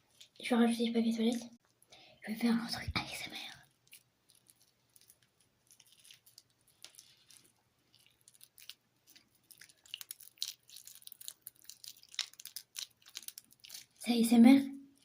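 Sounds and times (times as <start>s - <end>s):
wet slime squishing: 2.6s - 14.2s.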